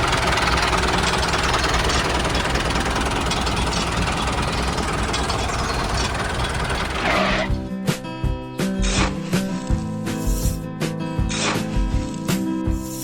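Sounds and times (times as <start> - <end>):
small motor whirring: 0.0 - 7.5.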